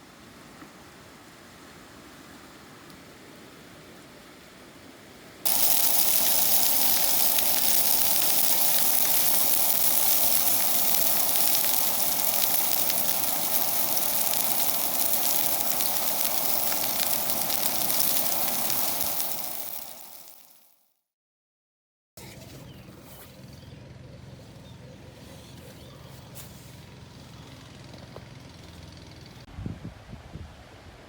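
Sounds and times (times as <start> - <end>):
loud steady hiss: 5.4 - 20.7.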